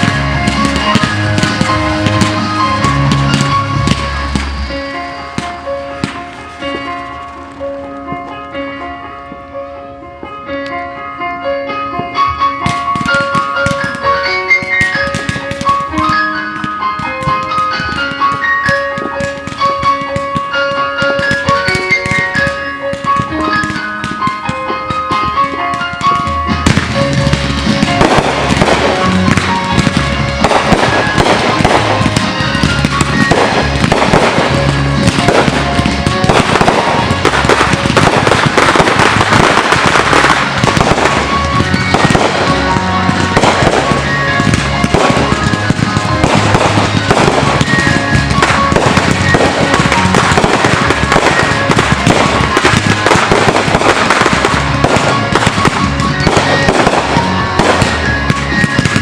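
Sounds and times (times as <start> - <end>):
fireworks bursting: 0.0 - 8.5, 12.0 - 59.0
music playing: 0.0 - 59.0.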